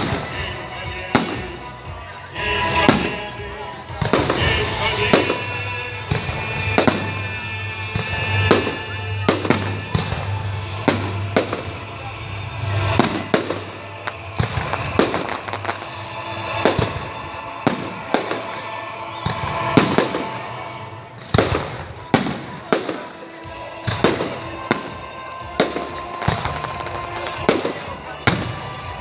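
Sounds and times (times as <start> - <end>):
music playing: 0.0 - 29.0.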